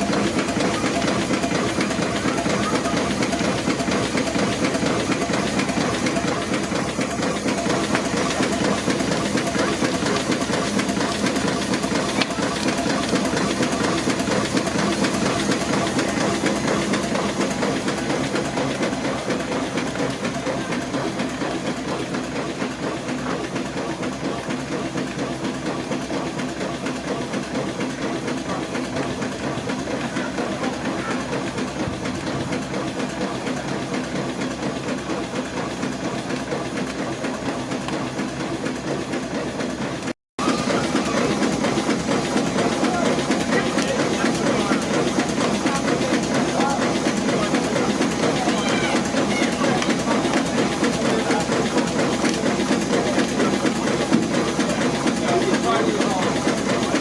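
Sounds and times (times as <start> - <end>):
steam hissing: 0.0 - 39.5
steam engine running: 0.0 - 57.0.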